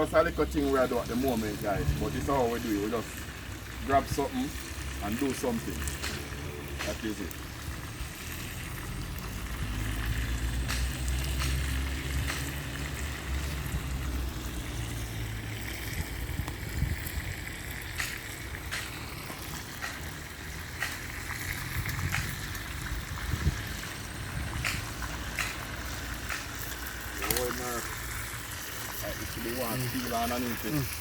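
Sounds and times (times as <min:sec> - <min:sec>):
fire hiss: 0:00.0 - 0:31.0
wood fire crackling: 0:00.0 - 0:31.0
wind buffeting microphone: 0:15.8 - 0:17.6, 0:21.6 - 0:25.2.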